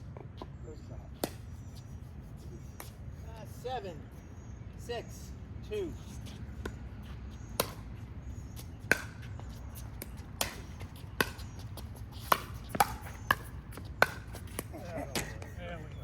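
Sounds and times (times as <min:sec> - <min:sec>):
paddles striking pickleball: 0:07.5 - 0:07.9, 0:08.6 - 0:15.5.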